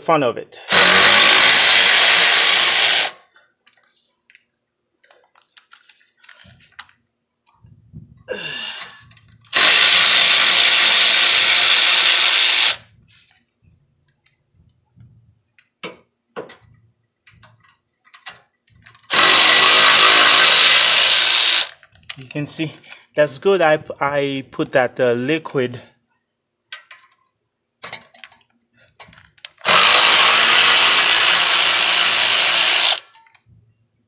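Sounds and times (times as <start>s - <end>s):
electric power tool running: 0.7s - 3.2s, 9.5s - 12.8s, 19.1s - 21.8s, 29.6s - 33.1s.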